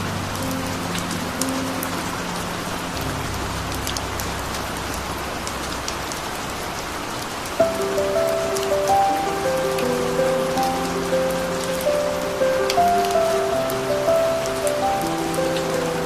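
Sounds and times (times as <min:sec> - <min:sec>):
melody of clear notes: 0:00.0 - 0:06.2, 0:07.6 - 0:16.0
soft low music tones: 0:00.0 - 0:16.0
steady rain: 0:00.0 - 0:16.0.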